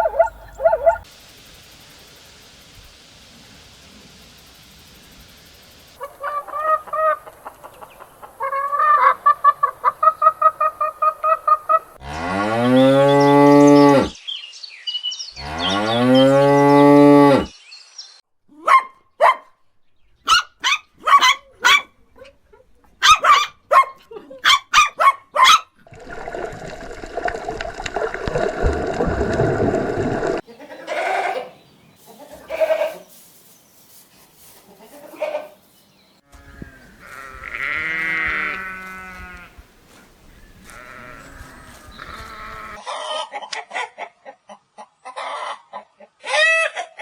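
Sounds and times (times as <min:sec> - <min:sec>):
farm fowl calling: 0:00.0 - 0:01.1, 0:06.0 - 0:14.1, 0:30.4 - 0:33.2, 0:34.6 - 0:44.1
cow mooing: 0:12.0 - 0:14.1, 0:15.4 - 0:17.5, 0:36.2 - 0:39.5, 0:40.6 - 0:42.8.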